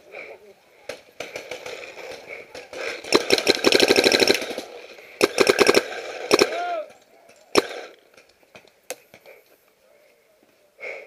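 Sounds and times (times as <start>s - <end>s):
paintball markers firing: 0.9s - 6.7s, 7.5s - 9.2s.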